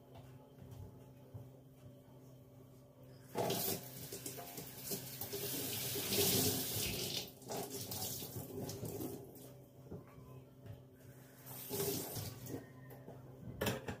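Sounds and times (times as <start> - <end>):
water splashing in sink: 3.4 - 9.3.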